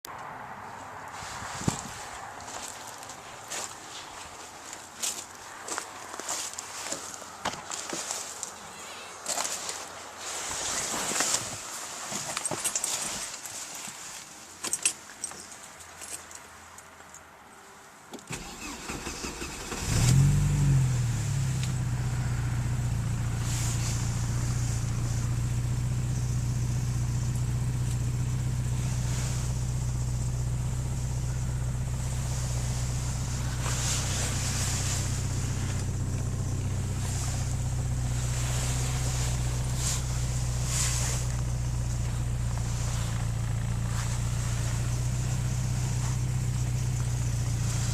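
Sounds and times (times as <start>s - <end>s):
car engine starting and idling: 18.3s - 47.9s.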